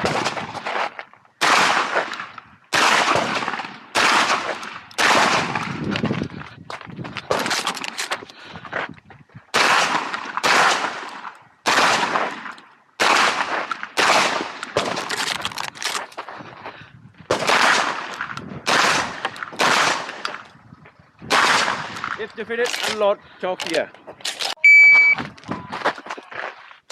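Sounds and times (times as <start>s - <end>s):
shotgun shots: 0.0s - 0.8s, 1.4s - 5.8s, 9.5s - 15.3s, 17.3s - 20.4s, 21.3s - 23.0s.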